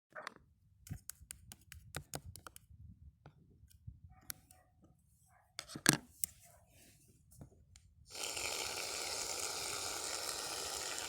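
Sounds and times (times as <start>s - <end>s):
light clicks and taps: 0.8s - 4.6s.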